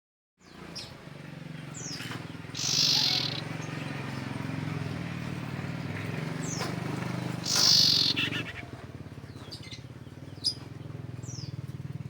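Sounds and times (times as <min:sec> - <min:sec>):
bird calling with trill: 0:01.7 - 0:03.8, 0:07.3 - 0:08.8.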